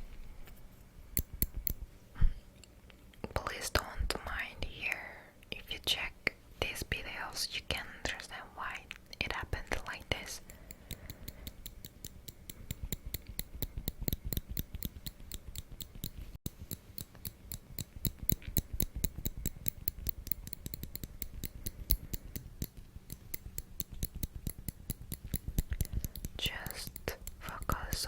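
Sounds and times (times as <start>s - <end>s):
metal tweezers clicking: 1.2s - 1.8s, 10.4s - 28.0s.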